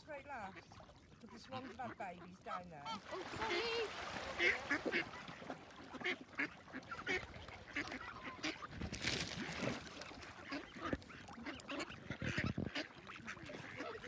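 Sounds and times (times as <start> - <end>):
geese honking: 1.6 - 8.7.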